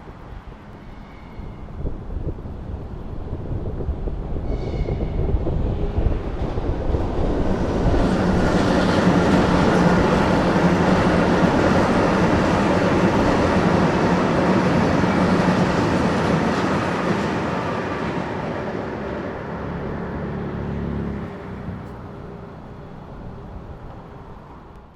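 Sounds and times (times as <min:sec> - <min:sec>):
train wheels on rails: 0:03.1 - 0:20.4.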